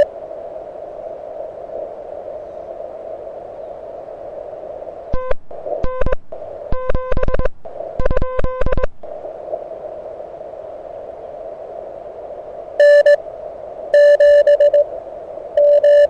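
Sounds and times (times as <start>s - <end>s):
radio receiver hiss: 5.1s - 9.6s
morse code buzzy tone: 5.2s - 9.2s, 12.8s - 13.2s, 14.0s - 14.8s, 15.6s - 16.0s.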